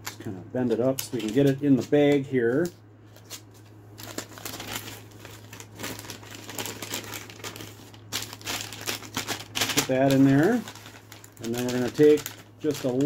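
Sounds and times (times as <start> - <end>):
food pouch crinkling: 4.0 - 13.0.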